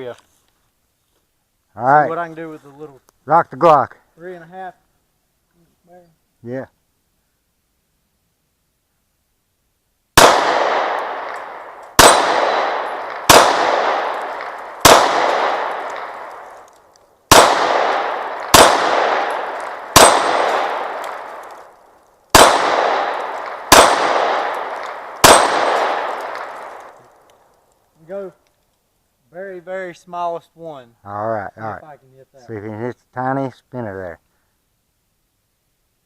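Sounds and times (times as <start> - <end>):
pistol shots ringing: 10.2 - 16.6, 17.3 - 21.6, 22.3 - 26.9.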